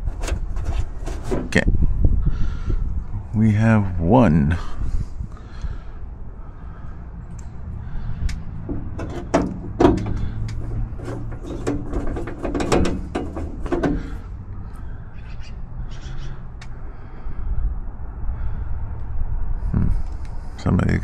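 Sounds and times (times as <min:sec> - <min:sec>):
metal hardware clicks and knocks: 0:08.6 - 0:14.3.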